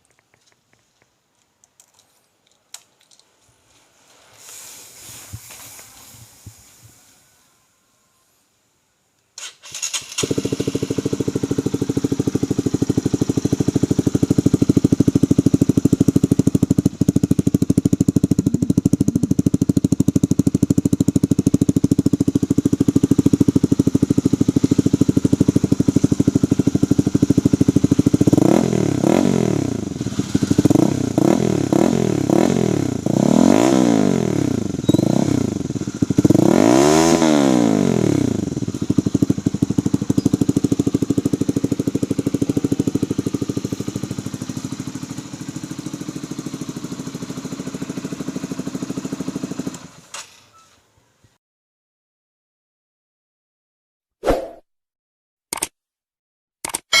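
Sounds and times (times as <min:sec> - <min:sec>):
motorcycle engine idling and revving: 0:09.6 - 0:50.9.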